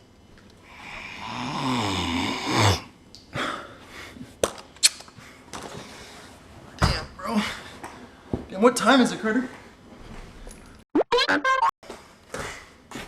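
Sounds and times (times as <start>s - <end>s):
breathy snore-like vocal noise: 0.7s - 2.9s.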